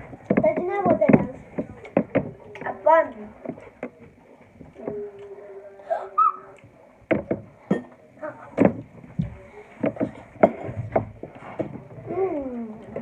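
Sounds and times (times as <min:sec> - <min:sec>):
tableware knocks and clatter: 0:07.1 - 0:08.0, 0:09.8 - 0:11.8.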